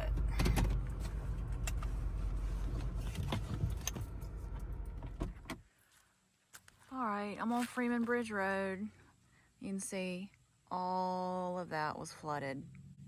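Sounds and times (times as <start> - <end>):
car engine and road rumble: 0.0 - 5.7.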